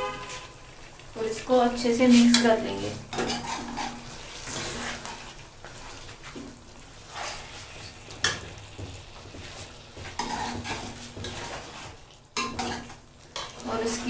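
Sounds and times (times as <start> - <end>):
light sizzling: 0.0 - 14.0
spoon stirring in a pan: 0.0 - 14.0
spoon knocking against pan: 8.2 - 11.4, 12.4 - 12.8.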